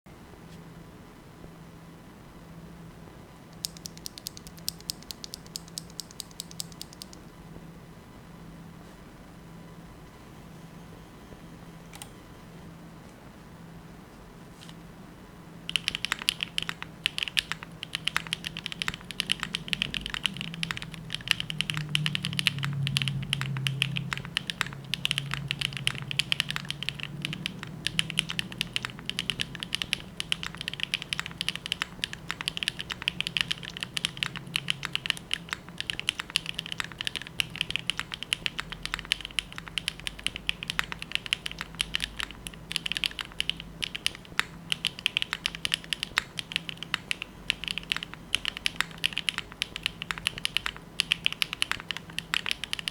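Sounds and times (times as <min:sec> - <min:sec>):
mechanical keyboard typing: 0:03.6 - 0:07.3, 0:15.7 - 0:52.9.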